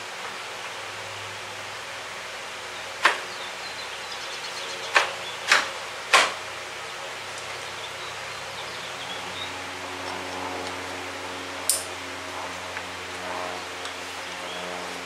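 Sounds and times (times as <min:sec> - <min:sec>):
steady background hiss: 0:00.0 - 0:10.1.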